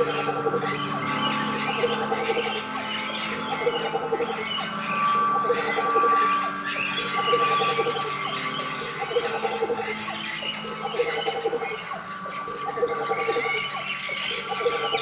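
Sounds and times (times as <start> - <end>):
ambient music with animal calls: 0.0 - 15.0.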